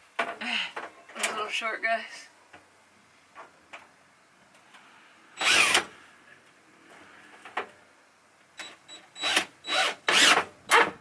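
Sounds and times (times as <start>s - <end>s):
power drill driving a screw: 5.4s - 5.9s, 9.2s - 10.9s.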